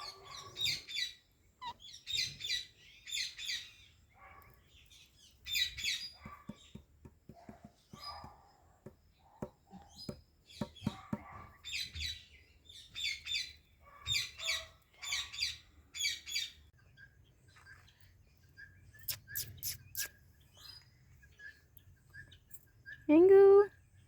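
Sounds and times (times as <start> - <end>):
parakeet chirping calls: 9.9 - 16.6, 18.9 - 20.8.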